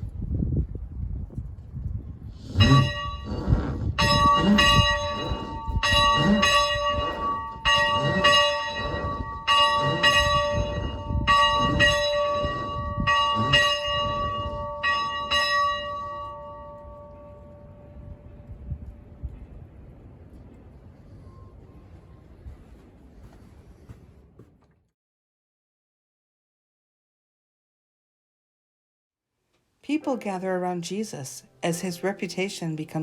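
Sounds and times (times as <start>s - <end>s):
church bell ringing: 2.7s - 3.3s, 4.0s - 19.0s.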